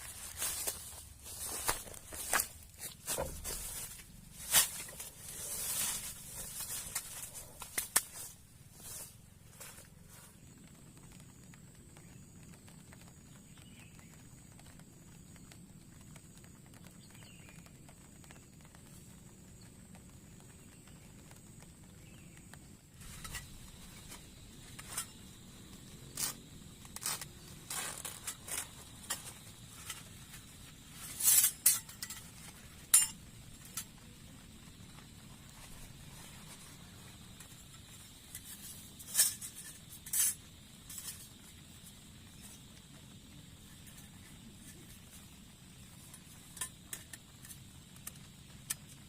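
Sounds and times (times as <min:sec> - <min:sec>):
small hard objects clinking: 0:26.1 - 0:34.0.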